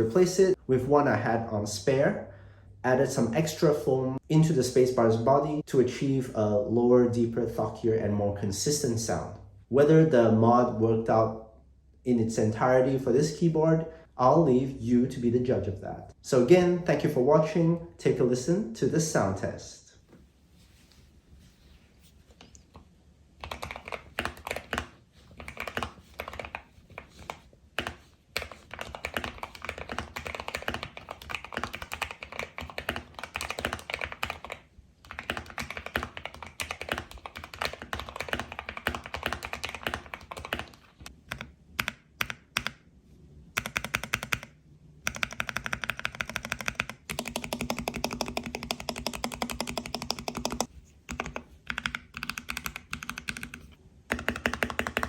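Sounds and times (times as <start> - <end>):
mechanical keyboard typing: 23.4 - 42.8, 43.6 - 55.0.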